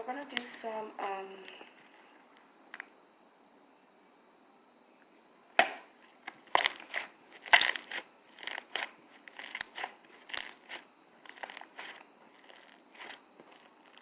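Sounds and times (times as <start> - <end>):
slime clicking and popping: 6.5 - 11.9.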